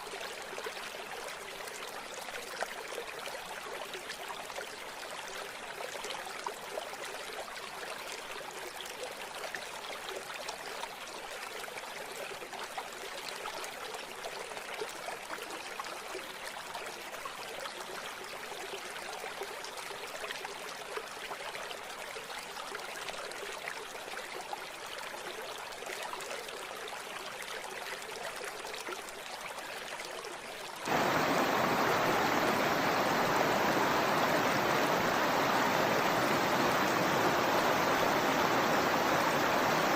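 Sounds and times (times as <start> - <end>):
river water flowing over stones: 27.6 - 39.9.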